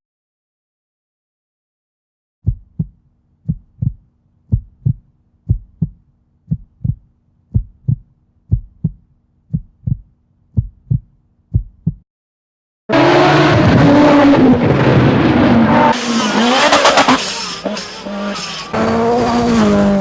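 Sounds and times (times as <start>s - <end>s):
heartbeat thumps: 2.4s - 12.0s.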